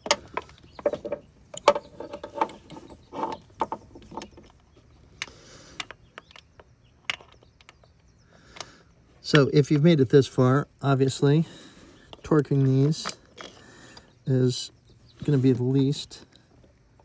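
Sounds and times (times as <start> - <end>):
rattling scrape: 0.0 - 4.5.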